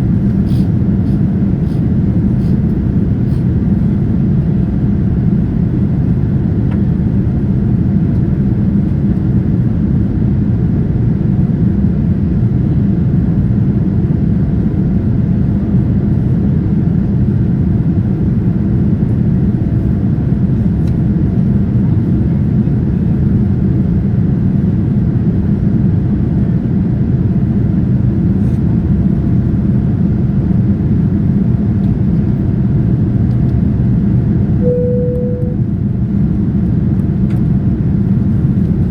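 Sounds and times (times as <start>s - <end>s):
airliner cabin engine rumble: 0.0s - 38.9s
single tone: 34.6s - 35.8s.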